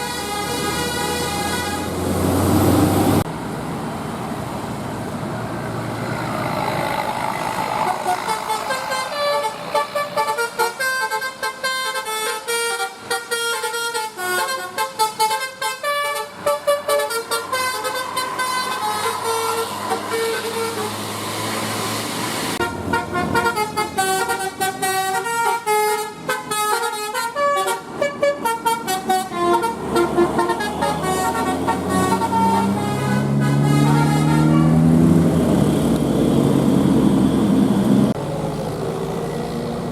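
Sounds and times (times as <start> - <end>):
musical air horn playing tunes: 0.0 - 2.0, 7.9 - 21.2, 22.6 - 34.9
vehicle engine revving: 1.0 - 3.3, 5.7 - 10.1, 29.6 - 39.9.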